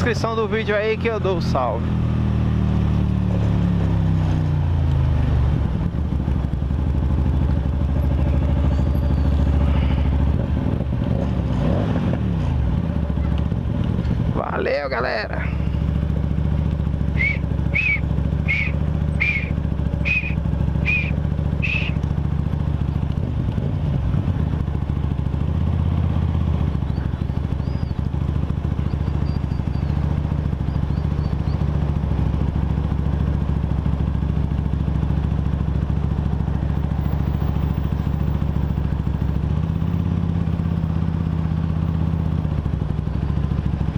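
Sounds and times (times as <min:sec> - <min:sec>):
motorcycle engine running: 0:00.0 - 0:43.9.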